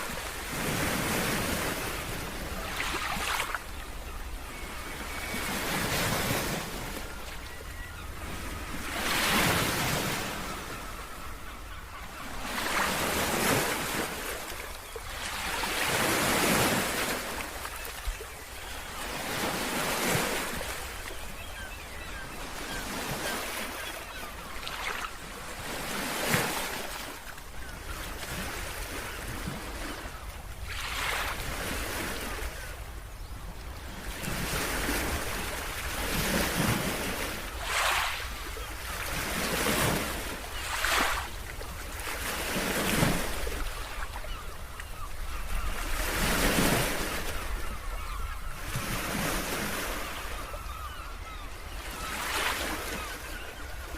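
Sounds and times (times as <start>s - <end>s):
waves breaking on beach: 0.0s - 11.0s, 22.7s - 32.6s, 34.0s - 50.2s.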